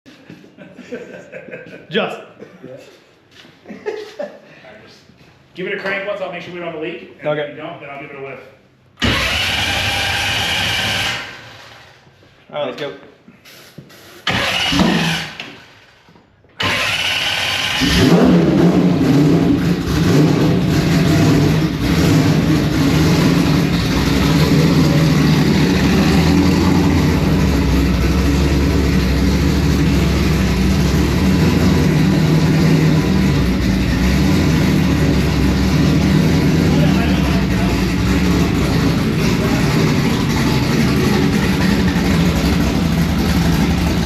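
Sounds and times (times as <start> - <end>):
starter cranking engine: 9.0 - 11.9, 14.3 - 15.7, 16.6 - 18.5
car engine idling loudly: 16.6 - 44.0.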